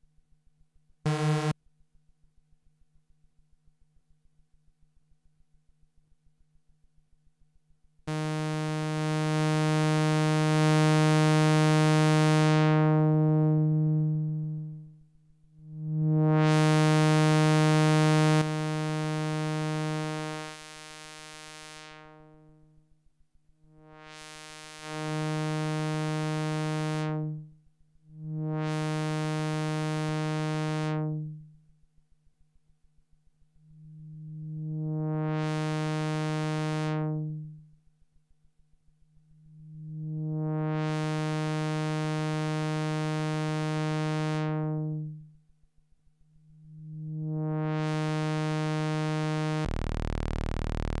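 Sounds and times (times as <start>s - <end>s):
synthesizer low buzzy note: 1.1s - 1.6s, 46.7s - 51.0s.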